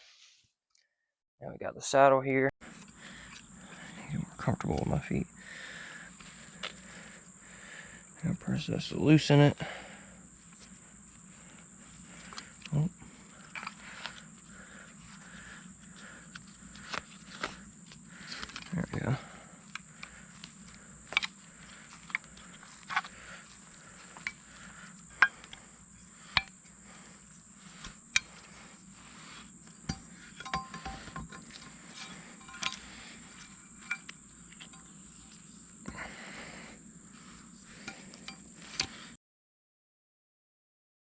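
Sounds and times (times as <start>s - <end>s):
steady high-pitched whine: 2.6s - 39.2s
metallic clicks of climbing gear: 11.6s - 36.1s, 37.4s - 39.1s.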